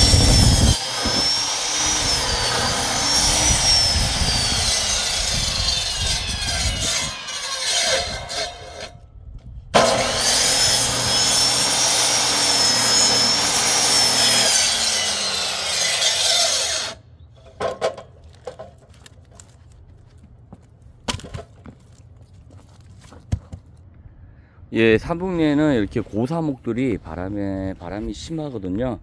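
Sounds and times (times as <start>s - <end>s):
angle grinder cutting log: 0.0s - 8.9s, 9.8s - 17.0s.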